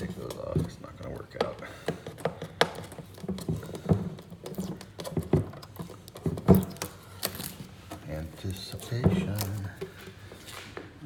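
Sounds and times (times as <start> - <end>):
hands opening a package: 4.4 - 7.7.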